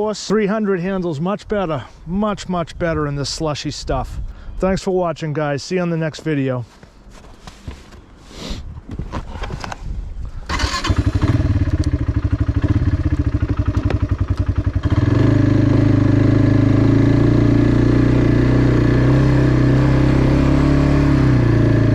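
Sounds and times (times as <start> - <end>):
engine starting and idling: 10.5 - 14.6.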